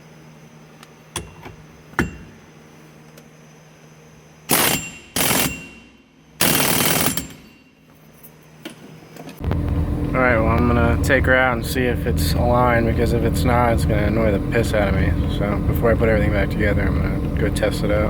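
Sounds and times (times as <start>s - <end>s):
air impact wrench running: 4.5s - 7.5s
sharp metal clicks: 4.5s - 7.5s.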